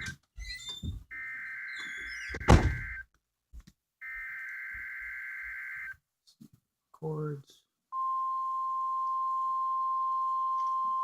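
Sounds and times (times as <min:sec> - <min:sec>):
loud thump: 0:02.4 - 0:02.9.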